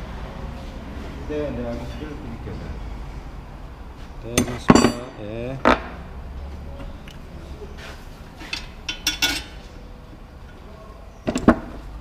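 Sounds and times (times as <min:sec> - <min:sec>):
metal tools clinking: 0:04.4 - 0:05.1, 0:08.5 - 0:09.6.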